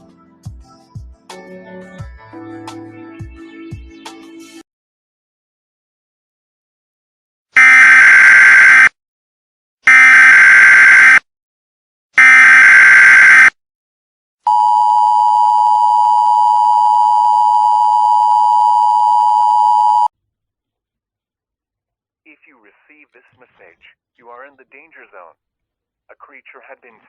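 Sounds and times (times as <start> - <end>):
two-tone attention signal: 14.5 - 20.1.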